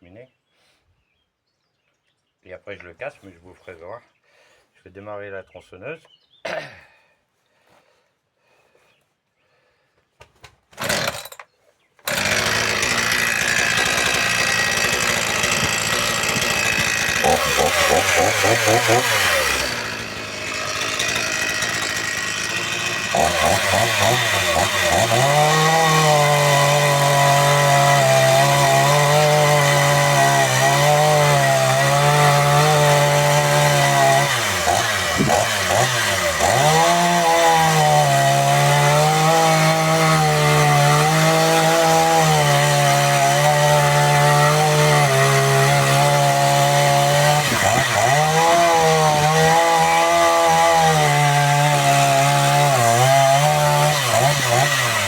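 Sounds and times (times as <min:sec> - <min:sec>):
chainsaw cutting logs: 0:10.2 - 0:55.0.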